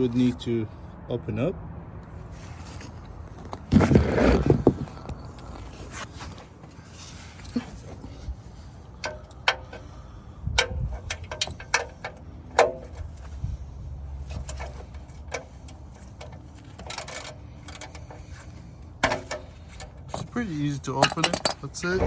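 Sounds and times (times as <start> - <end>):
low rumble: 21.8 - 22.0.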